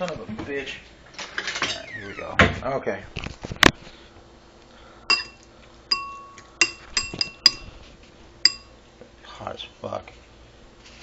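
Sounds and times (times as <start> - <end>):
utensil clinking against dish: 5.1 - 7.7, 8.4 - 8.7.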